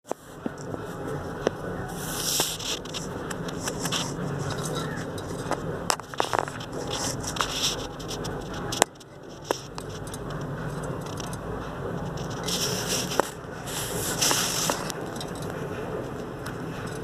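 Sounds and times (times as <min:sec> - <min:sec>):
birds scraping and rustling in cage: 0:00.2 - 0:17.0
hissy rustling: 0:12.0 - 0:16.2.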